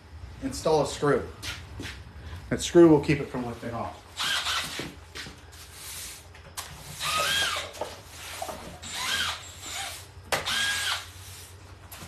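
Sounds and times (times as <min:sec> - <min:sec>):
power drill driving screw: 0:04.2 - 0:04.8, 0:06.9 - 0:07.8, 0:08.8 - 0:11.1.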